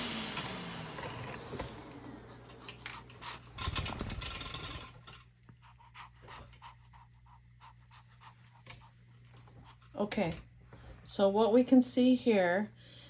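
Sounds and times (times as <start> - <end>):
blow dryer running: 0.0 - 4.9
small dog panting: 5.4 - 10.0.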